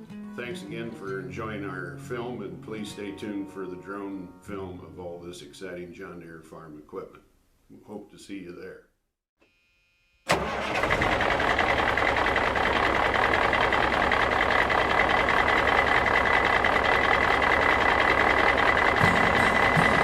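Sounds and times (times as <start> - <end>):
music: 0.0 - 5.7, 19.0 - 20.0.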